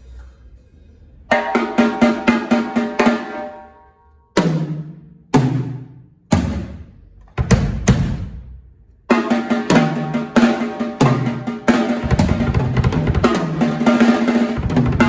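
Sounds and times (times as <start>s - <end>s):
quick drum strokes: 9.1s - 15.0s.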